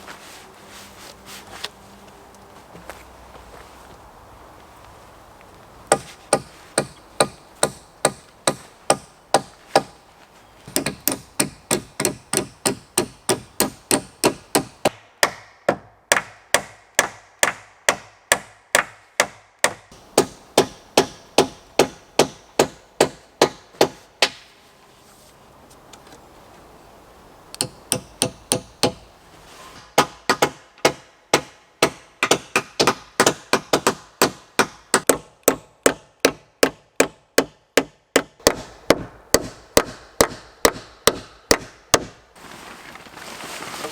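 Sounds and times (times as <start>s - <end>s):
hammer driving nails into wood: 10.7s - 24.4s, 27.6s - 29.0s, 29.8s - 42.2s.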